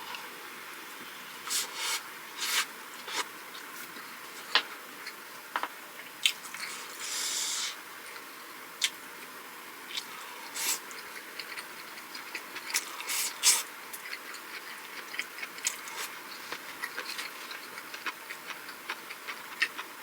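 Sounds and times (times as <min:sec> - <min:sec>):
chewing and biting: 0:10.7 - 0:20.0.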